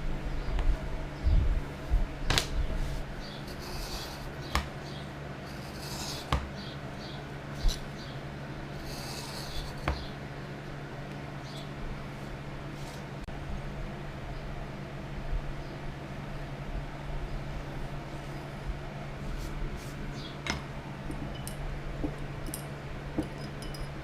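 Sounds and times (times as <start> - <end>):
steady low hum: 0.0 - 24.0
scratchy rubbing on leather: 2.8 - 4.5, 5.5 - 6.4, 8.8 - 10.1.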